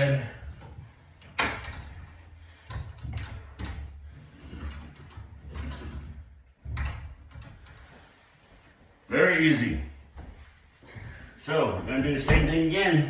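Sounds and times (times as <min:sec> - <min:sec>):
door rumbling in track: 0:11.9 - 0:13.0.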